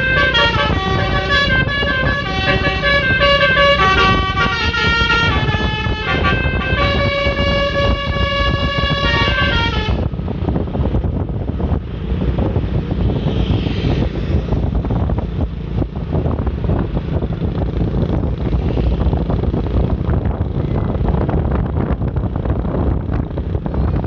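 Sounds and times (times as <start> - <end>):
multi-tone bus horn tune: 0.0 - 10.2
low rumble of bus and road: 0.0 - 24.0.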